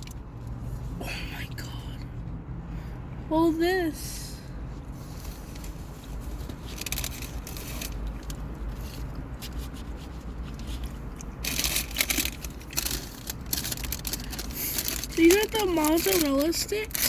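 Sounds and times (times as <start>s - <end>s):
paper packaging rustling: 5.4s - 17.0s.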